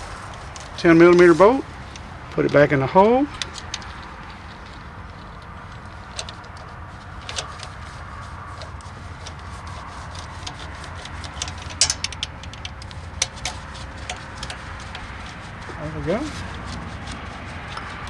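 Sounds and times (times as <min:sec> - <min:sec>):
metallic clicks of tool and bolt: 0:08.5 - 0:15.7.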